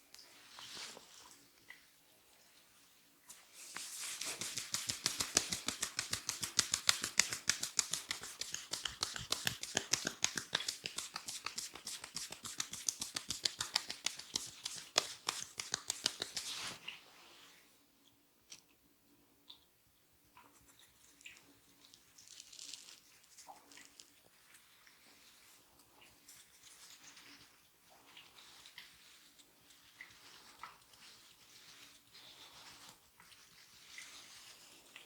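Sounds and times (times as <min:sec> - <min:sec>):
hands tapping on head: 0:04.0 - 0:16.8.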